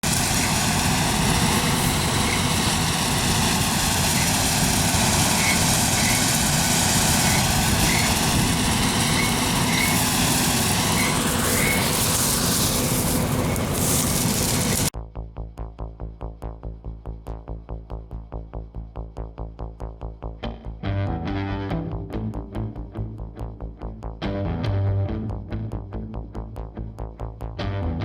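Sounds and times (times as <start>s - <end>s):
combine harvester drone: 0.0s - 14.9s.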